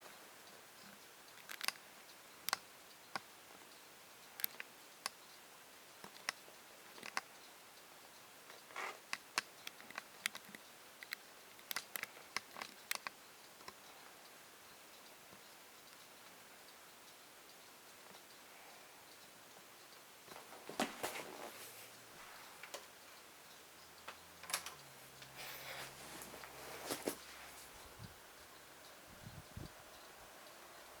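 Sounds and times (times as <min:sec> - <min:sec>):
sharp clicks and light taps: 0:00.8 - 0:03.6, 0:04.2 - 0:05.4, 0:06.0 - 0:14.0, 0:19.1 - 0:28.1.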